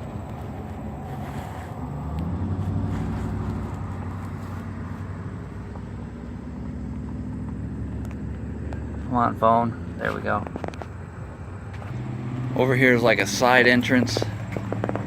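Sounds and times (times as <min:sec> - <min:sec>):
traffic rumble: 0:00.0 - 0:15.0
vehicle engine passing: 0:00.0 - 0:15.0.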